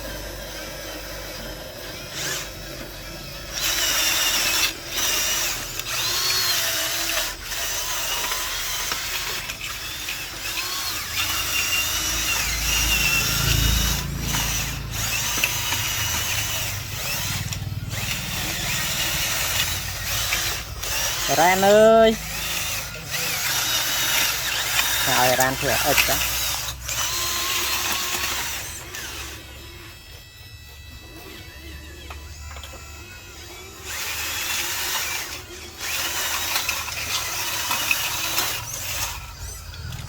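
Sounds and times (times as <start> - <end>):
small electric motor whining: 0.0 - 40.0
low rumble: 12.4 - 20.2.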